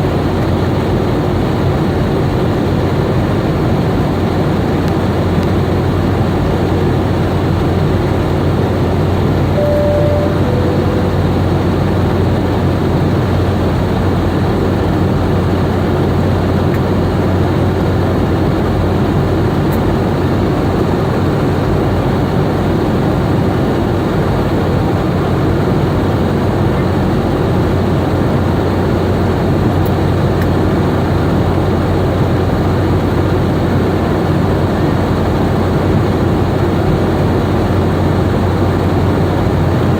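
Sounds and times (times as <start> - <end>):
two-note chime tone: 9.6 - 12.0.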